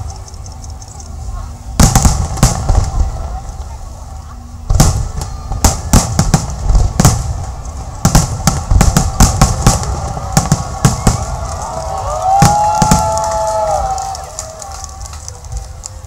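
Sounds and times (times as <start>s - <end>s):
fireworks bangs and crackles: 1.2s - 16.0s.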